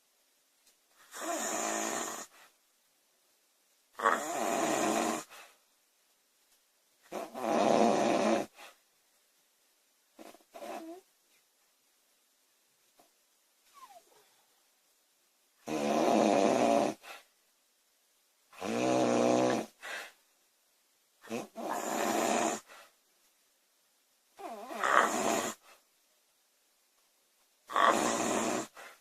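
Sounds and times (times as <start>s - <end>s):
woman snoring loudly: 1.1s - 2.3s, 4.0s - 5.3s, 7.1s - 8.5s, 15.6s - 17.0s, 18.6s - 19.8s, 21.3s - 22.7s, 24.4s - 25.6s, 27.7s - 28.8s.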